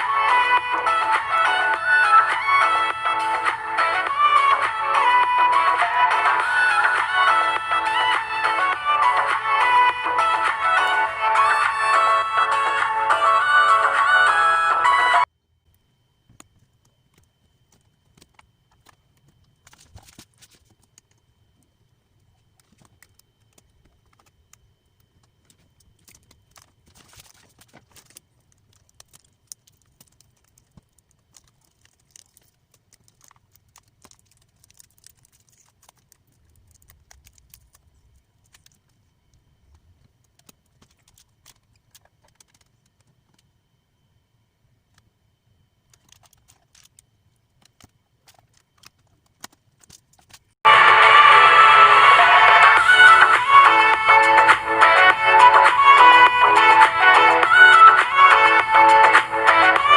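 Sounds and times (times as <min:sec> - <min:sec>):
faint high whine: 0:00.0 - 0:59.9
small hard parts clicking: 0:22.2 - 0:43.5, 0:45.8 - 0:50.6.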